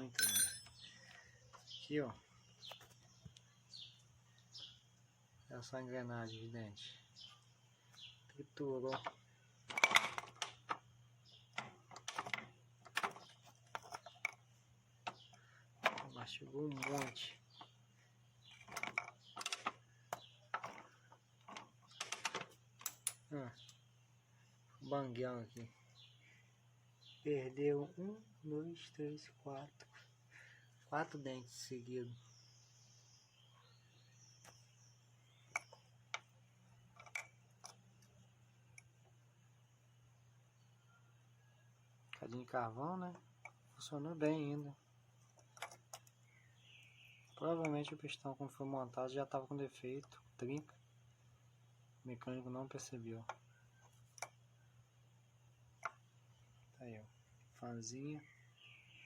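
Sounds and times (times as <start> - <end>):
metal engine parts clicking: 0.0 - 0.9, 16.7 - 17.7.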